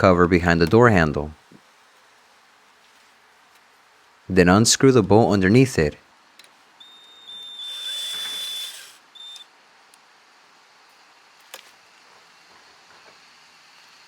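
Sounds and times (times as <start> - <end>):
power driver motor whine: 6.8 - 9.5.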